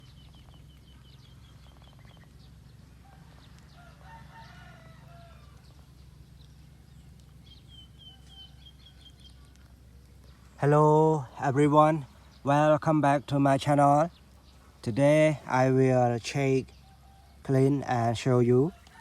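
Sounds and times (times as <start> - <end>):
small bird chirping: 0.0 - 15.7, 16.4 - 19.0
steady low hum: 0.0 - 19.0
rooster crowing faintly: 2.9 - 6.0, 18.6 - 19.0.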